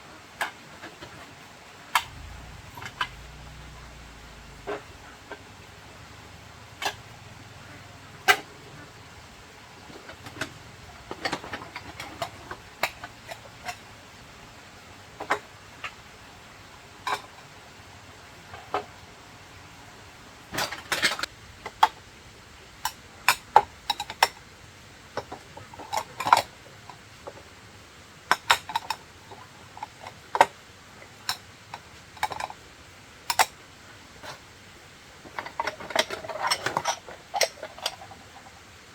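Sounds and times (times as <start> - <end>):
hard objects clicking and clattering: 35.2 - 38.6.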